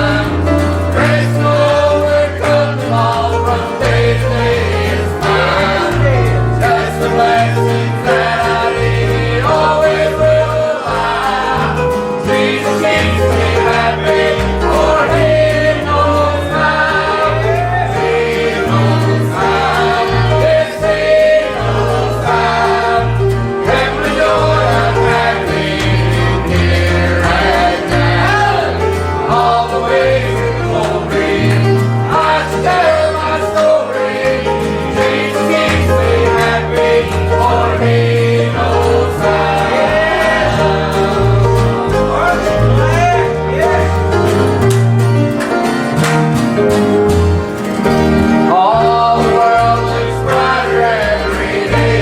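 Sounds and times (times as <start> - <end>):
country-style band: 0.0 - 52.0
voices singing gospel song: 0.0 - 52.0.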